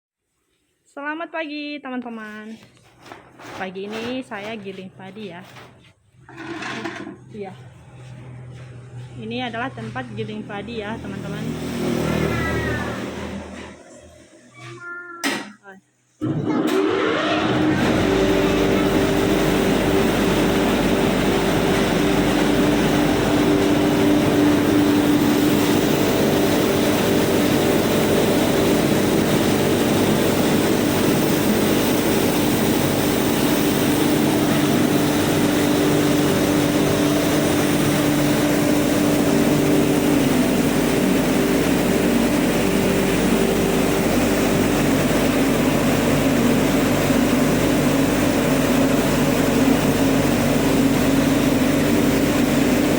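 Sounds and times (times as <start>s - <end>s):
rice milling machine running: 6.3s - 14.4s, 16.2s - 52.9s.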